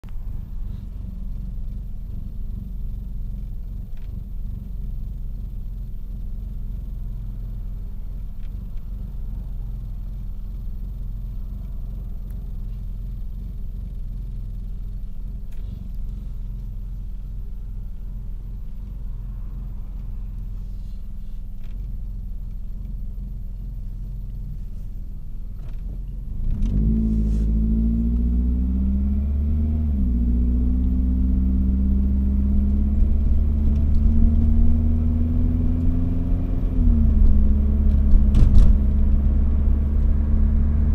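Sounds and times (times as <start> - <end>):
car engine idling roughly: 0.2 - 26.3.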